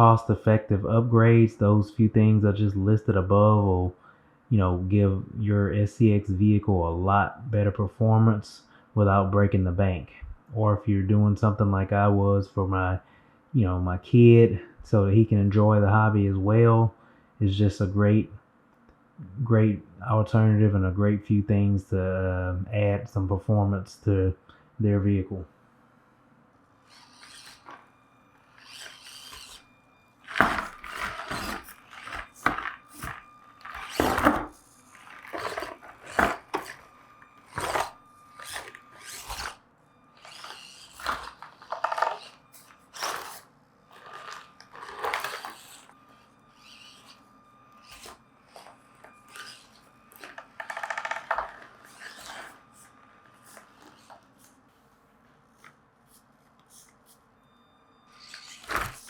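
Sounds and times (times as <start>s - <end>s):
toy car electric motor whirring: 0.0s - 0.3s, 26.8s - 54.6s, 55.6s - 57.2s, 58.0s - 59.0s.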